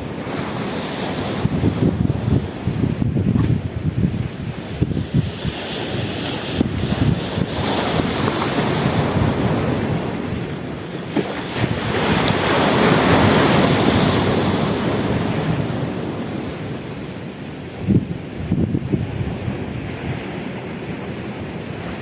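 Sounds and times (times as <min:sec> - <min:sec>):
sea waves surging: 0:00.0 - 0:22.0
wind buffeting microphone: 0:00.0 - 0:22.0.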